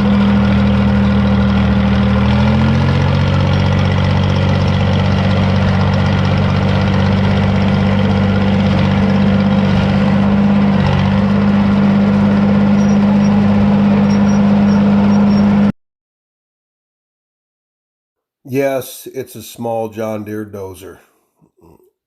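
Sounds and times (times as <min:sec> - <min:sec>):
dozer engine running: 0:00.0 - 0:15.7.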